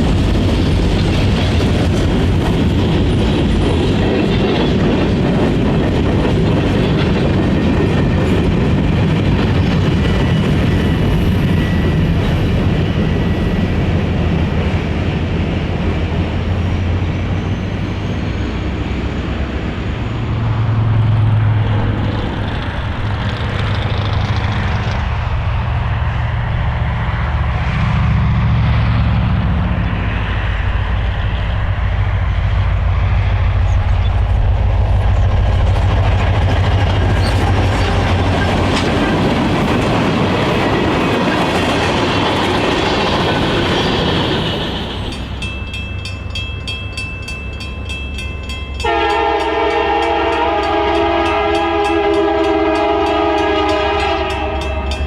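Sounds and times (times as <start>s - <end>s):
freight train passing: 0.0s - 55.0s
train air horn chord: 48.8s - 55.0s.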